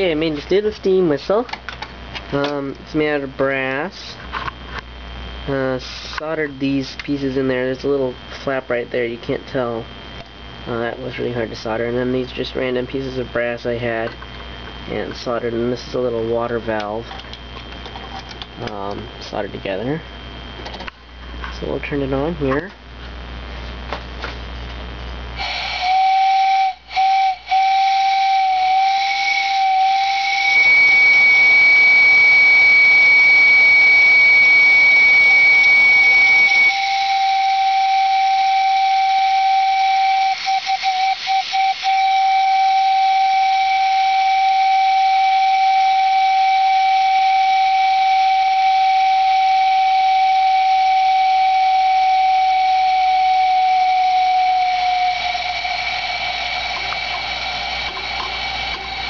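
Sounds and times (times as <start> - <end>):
steam hiss: 5.6 - 6.4, 25.4 - 59.0
steam whistle blowing: 25.4 - 59.0.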